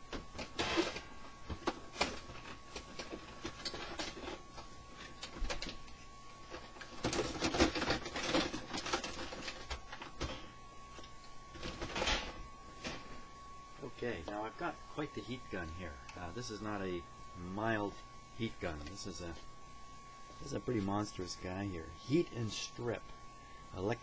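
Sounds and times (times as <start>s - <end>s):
faint steady high tone: 8.9s - 24.0s.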